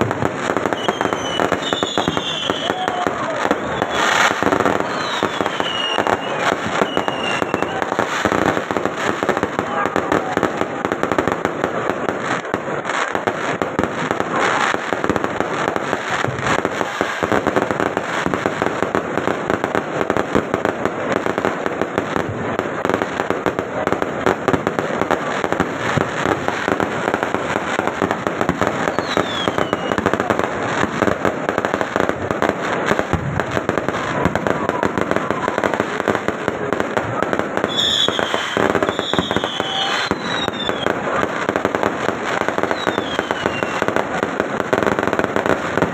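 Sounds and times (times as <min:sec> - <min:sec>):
fireworks whistles falling: 0:00.0 - 0:11.0, 0:25.0 - 0:30.9, 0:37.1 - 0:45.9
fireworks crackling: 0:00.0 - 0:45.9.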